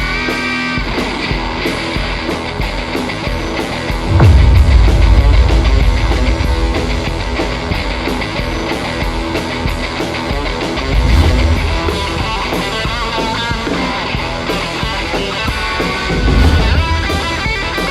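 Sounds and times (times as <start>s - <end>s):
rock music with electric guitar: 0.0s - 4.1s, 6.1s - 17.9s
heavy bass swell: 4.1s - 9.0s, 10.9s - 12.4s.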